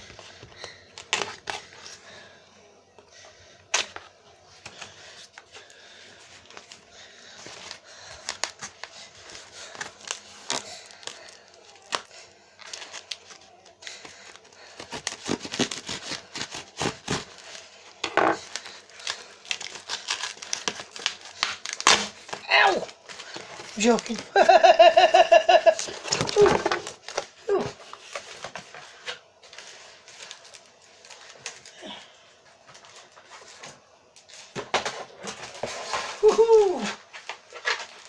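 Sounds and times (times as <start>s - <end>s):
packaging tearing and crinkling: 8.1s - 13.6s, 14.7s - 17.8s, 18.4s - 24.3s.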